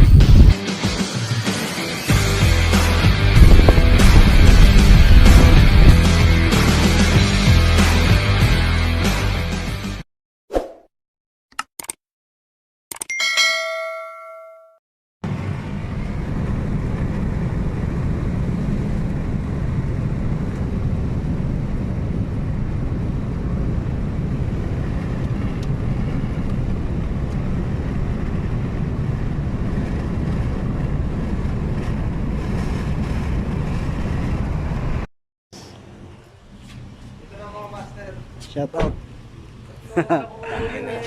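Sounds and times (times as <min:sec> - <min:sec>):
wind buffeting microphone: 0:03.3 - 0:06.0.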